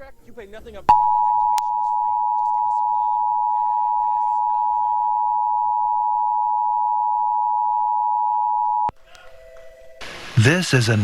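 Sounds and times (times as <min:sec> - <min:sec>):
two-tone alert signal: 0:00.9 - 0:08.9.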